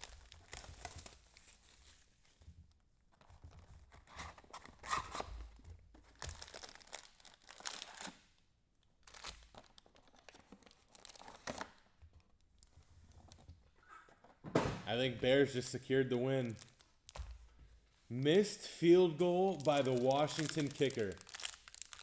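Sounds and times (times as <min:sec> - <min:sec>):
packaging tearing and crinkling: 0:00.0 - 0:01.9, 0:06.1 - 0:08.2, 0:09.1 - 0:11.8, 0:19.5 - 0:22.0.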